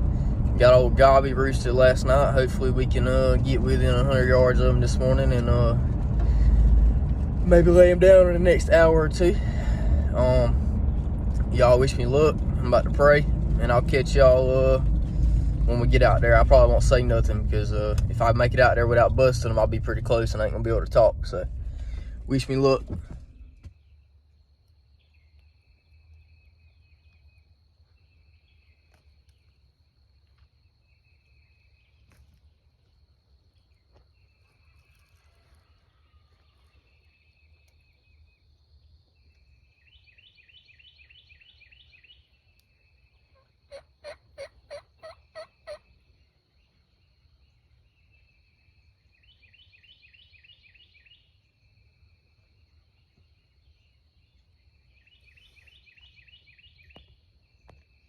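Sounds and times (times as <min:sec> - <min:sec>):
turkey gobbling: 0:43.2 - 0:46.0.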